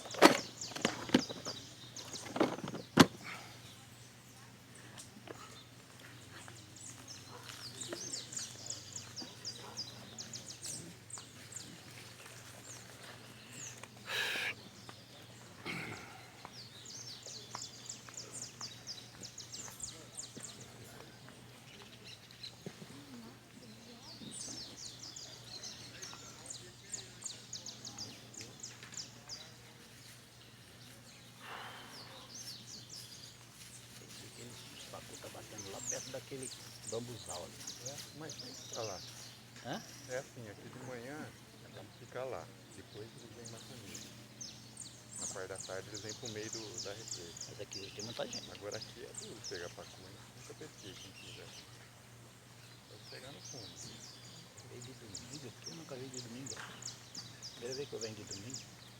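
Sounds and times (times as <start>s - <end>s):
small birds chirping: 0.0s - 58.9s
brief rustling hiss: 14.1s - 14.6s.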